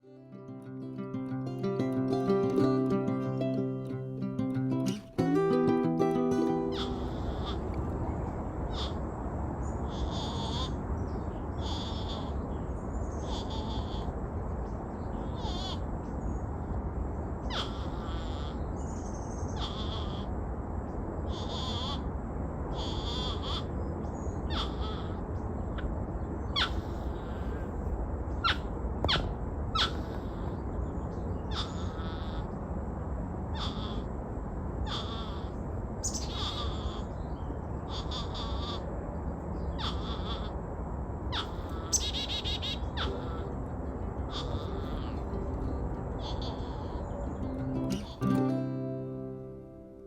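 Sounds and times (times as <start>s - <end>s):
porcupines whining cries: 6.6s - 8.0s, 8.7s - 9.0s, 9.9s - 10.8s, 11.5s - 12.5s, 13.2s - 14.2s, 15.2s - 15.9s, 17.5s - 18.8s, 19.6s - 20.3s, 21.3s - 22.1s, 22.7s - 23.8s, 24.5s - 25.2s, 26.6s - 27.8s, 31.5s - 32.6s, 33.5s - 34.2s, 34.8s - 38.9s, 39.7s - 40.6s, 41.3s - 48.2s.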